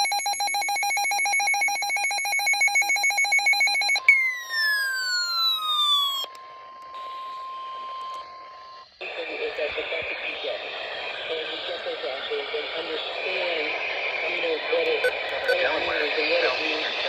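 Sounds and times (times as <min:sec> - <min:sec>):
pulsing electronic alarm: 0:00.0 - 0:09.2.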